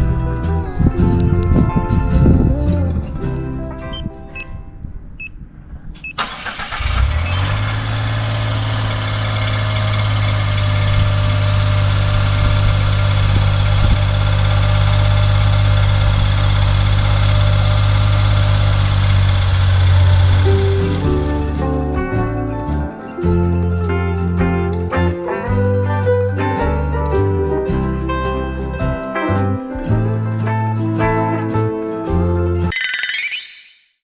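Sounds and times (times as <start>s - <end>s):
car engine starting and idling: 6.1s - 22.8s.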